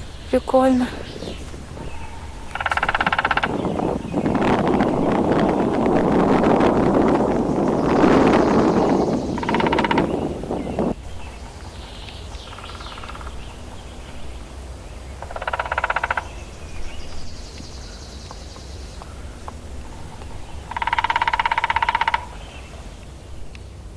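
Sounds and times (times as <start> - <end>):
faint bird calls: 0.0 - 14.4, 15.0 - 23.8
high bird trill: 0.0 - 14.4, 15.0 - 23.5
woodpecker drumming on tree: 0.0 - 22.9.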